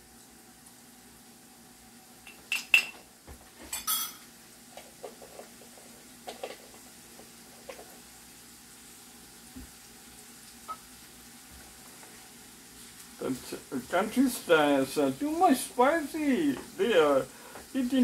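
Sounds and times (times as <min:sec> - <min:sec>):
metal utensils and dishes clinking: 0:03.7 - 0:04.3.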